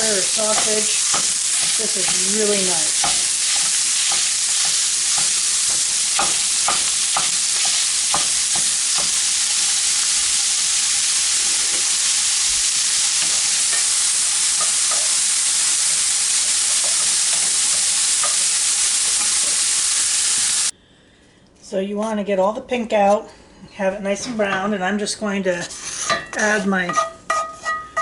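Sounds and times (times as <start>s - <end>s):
sausage sizzling in a frying pan: 0.0s - 20.7s
tool scraping and knocking on pan: 0.5s - 9.2s, 16.7s - 18.4s, 25.6s - 28.0s.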